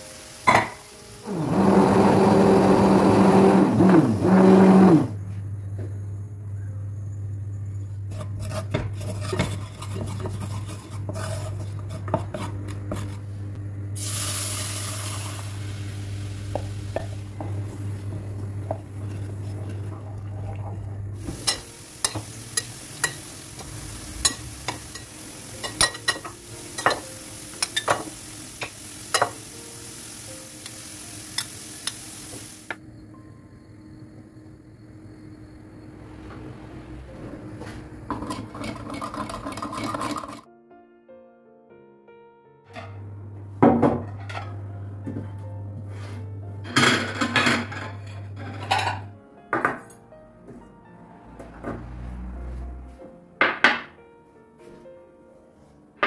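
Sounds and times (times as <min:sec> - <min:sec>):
utensils clinking against pots: 0:00.5 - 0:00.9, 0:19.0 - 0:23.4, 0:24.2 - 0:29.4, 0:38.1 - 0:40.5, 0:46.6 - 0:50.0
loud whirring hum: 0:01.3 - 0:22.2
steady low hum: 0:05.1 - 0:26.2.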